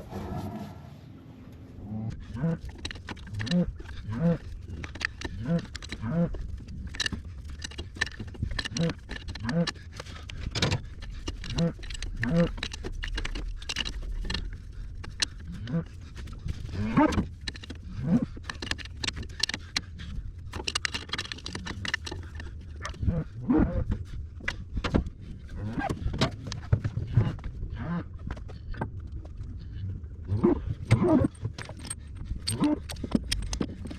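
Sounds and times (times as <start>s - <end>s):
metal tools clicking and clinking: 2.2s - 23.1s, 30.9s - 33.9s.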